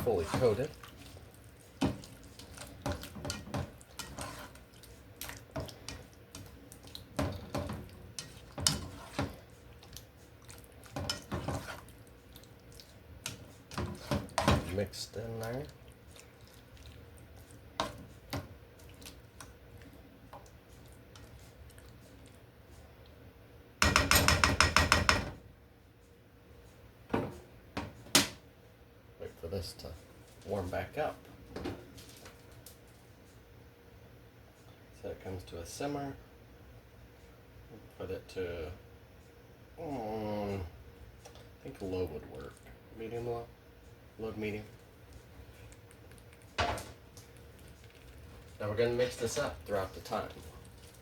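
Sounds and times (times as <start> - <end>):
utensil clinking and scraping pan: 0.0 - 0.7, 2.6 - 4.6, 7.2 - 9.4, 10.9 - 11.9
wet stirring sauce: 0.0 - 23.2, 40.9 - 51.0
cookware knocks: 23.8 - 25.4.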